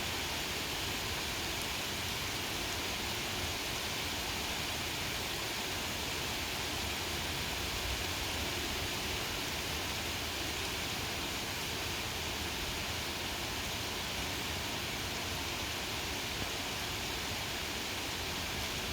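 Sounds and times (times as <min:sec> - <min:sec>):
steady rain: 0:00.0 - 0:18.9.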